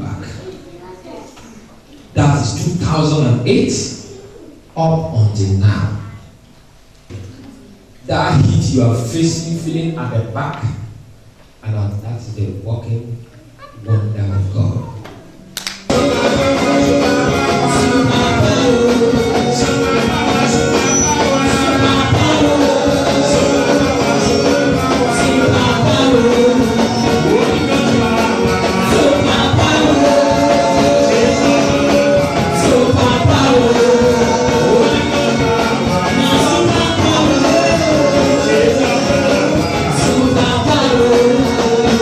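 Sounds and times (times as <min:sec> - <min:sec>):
loud music with singing: 0:15.8 - 0:42.0.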